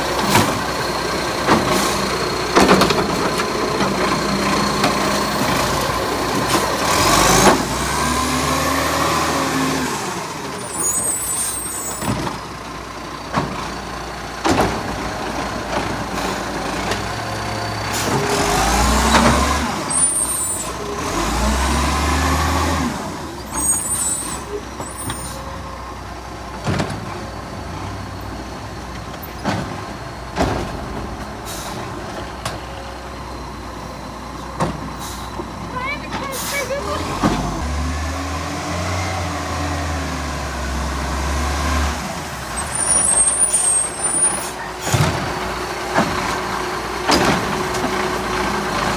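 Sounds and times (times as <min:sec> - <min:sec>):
garbage truck engine revving: 0:00.0 - 0:48.9
air brakes hissing: 0:10.6 - 0:12.2, 0:19.9 - 0:20.8, 0:23.4 - 0:25.6, 0:31.4 - 0:32.0, 0:34.9 - 0:35.6, 0:36.2 - 0:36.9, 0:42.6 - 0:45.2.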